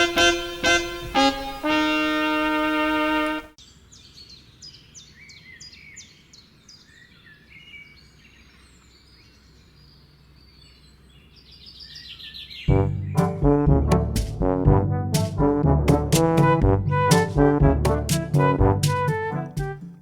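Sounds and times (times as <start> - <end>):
background hiss: 0.0 - 3.6, 13.0 - 14.6.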